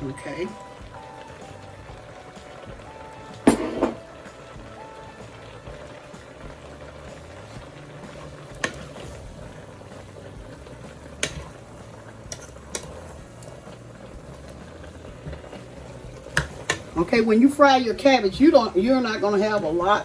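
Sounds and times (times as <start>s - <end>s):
broth bubbling in a pot: 0.0s - 20.0s
utensil knocking against pot: 11.2s - 11.5s, 16.3s - 17.0s.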